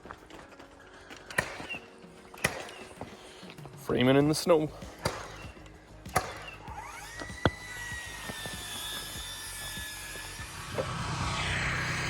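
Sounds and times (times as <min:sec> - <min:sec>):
power tool whine: 0:04.8 - 0:12.0
sharp wood knocks: 0:04.9 - 0:06.6.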